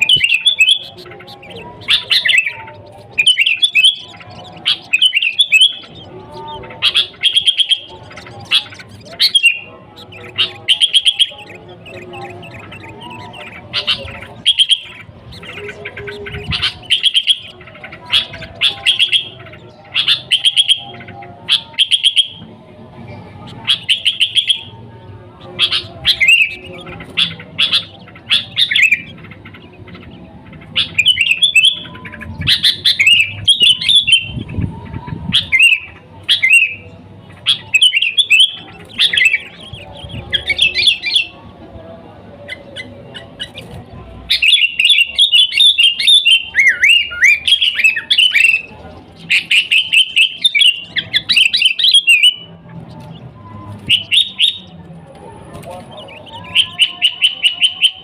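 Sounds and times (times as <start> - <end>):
bulbul singing: 0.0 - 58.0.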